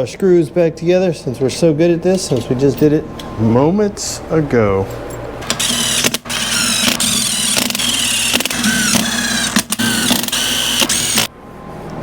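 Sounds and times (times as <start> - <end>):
cordless drill motor whine: 5.5 - 11.3.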